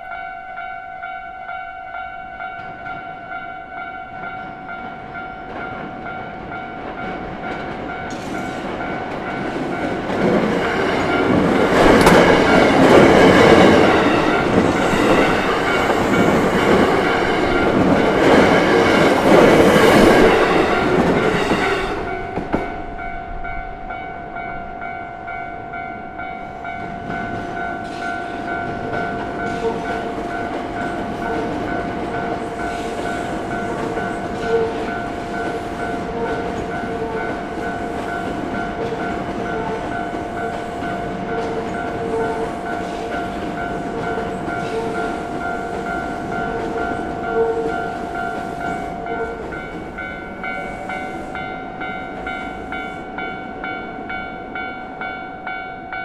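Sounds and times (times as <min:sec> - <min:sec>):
train passing: 0:00.0 - 0:56.0
level crossing alarm ringing: 0:00.1 - 0:22.5.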